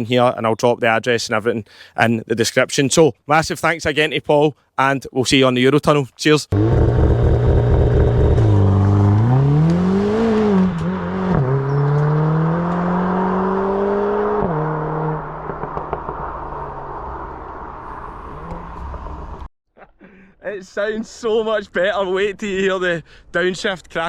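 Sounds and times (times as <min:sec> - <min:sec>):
car engine revving: 0:06.5 - 0:19.5.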